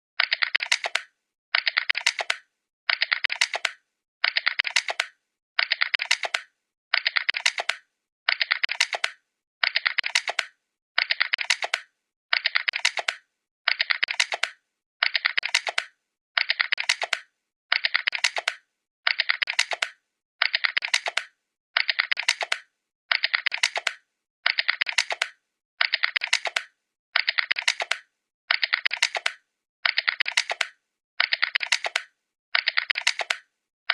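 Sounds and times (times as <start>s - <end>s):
keyboard keystroke clicks: 0.2s - 33.5s.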